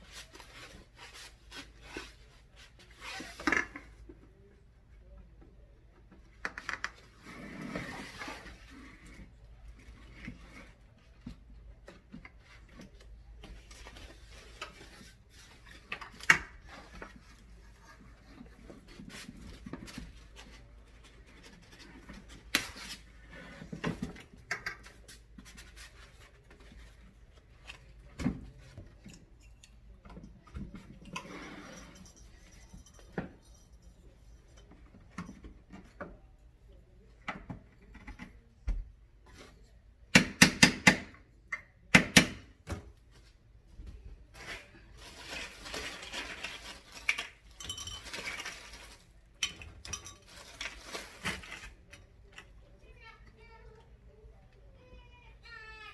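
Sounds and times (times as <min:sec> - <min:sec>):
rustling: 0:44.2 - 0:51.9.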